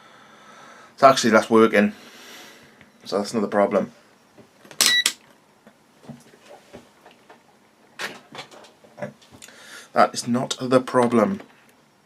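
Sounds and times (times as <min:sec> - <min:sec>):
short high-pitched beep: 0:04.8 - 0:05.1.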